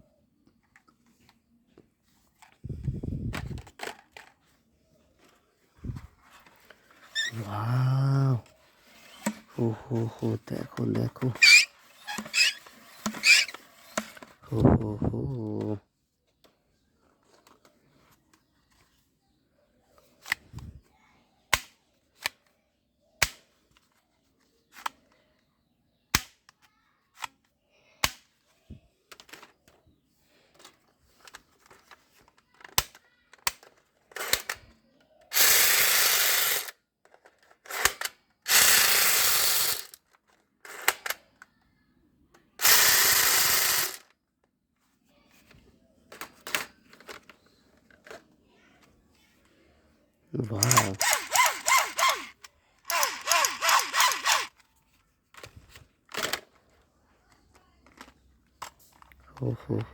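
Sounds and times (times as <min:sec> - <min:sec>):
toy gun clicks: 0:10.2 - 0:14.2, 0:32.6 - 0:34.7, 0:35.3 - 0:36.8, 0:37.7 - 0:40.0, 0:40.7 - 0:41.2, 0:42.6 - 0:44.1, 0:50.5 - 0:54.6
toy gun rapid firing: 0:35.3 - 0:36.7, 0:37.7 - 0:40.0, 0:42.6 - 0:44.0, 0:50.5 - 0:54.5.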